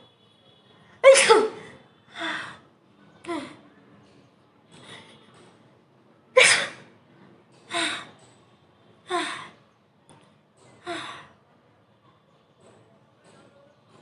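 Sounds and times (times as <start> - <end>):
girl sneezing: 1.0 - 1.6.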